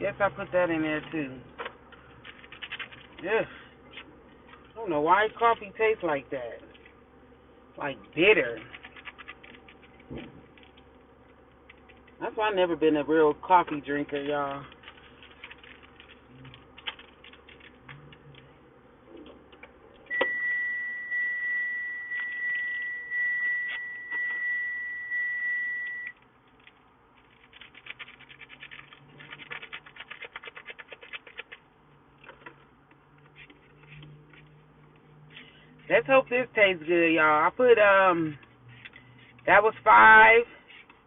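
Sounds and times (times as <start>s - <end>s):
sugar packets rustling: 1.9s - 7.0s, 8.0s - 12.2s, 13.7s - 18.5s, 26.3s - 31.7s
high electronic beep: 20.1s - 26.1s.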